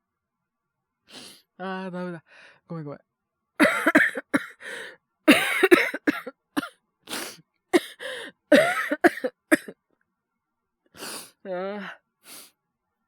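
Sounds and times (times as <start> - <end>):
man coughing hard: 3.6 - 6.7, 7.8 - 9.7.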